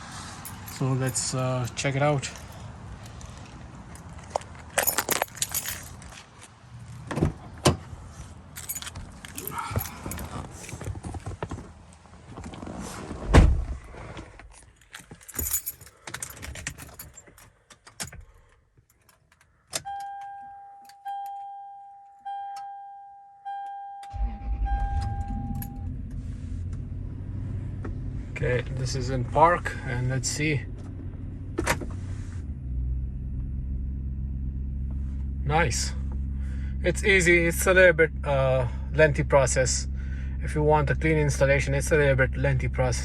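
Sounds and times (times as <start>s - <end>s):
keys jangling: 0.4s - 6.2s, 8.6s - 10.9s, 14.5s - 19.5s
dashboard warning chime beeping: 19.8s - 26.0s
car engine running: 24.1s - 43.0s.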